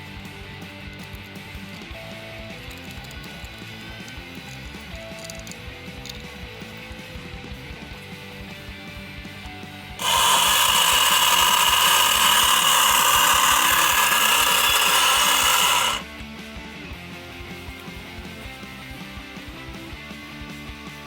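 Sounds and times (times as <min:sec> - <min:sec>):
small electric motor whirring: 0:10.0 - 0:16.0.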